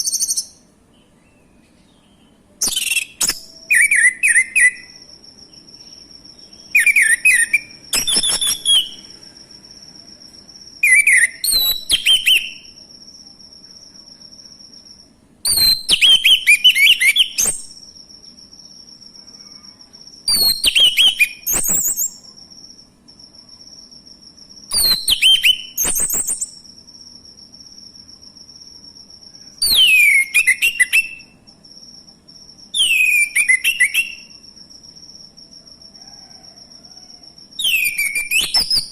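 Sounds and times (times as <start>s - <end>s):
high insect whine: 0.0s - 38.9s
thrush singing whistled phrases: 2.6s - 5.0s, 6.7s - 9.0s, 10.8s - 12.6s, 24.7s - 26.4s, 29.6s - 31.3s, 32.8s - 34.3s, 37.6s - 38.9s.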